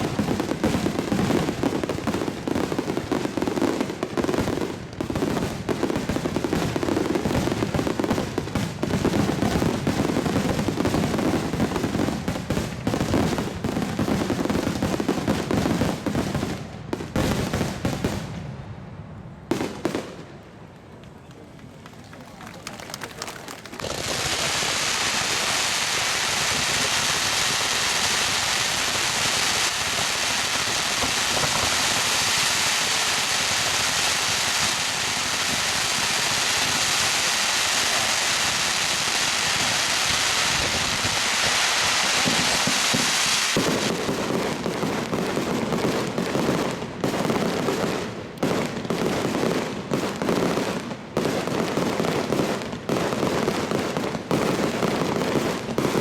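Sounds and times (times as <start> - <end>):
fireworks crackling and hissing: 0.0 - 56.0.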